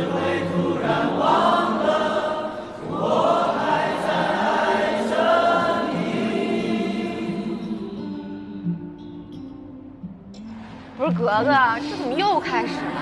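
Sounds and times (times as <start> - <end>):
group singing in unison: 0.0 - 9.0, 12.6 - 13.0.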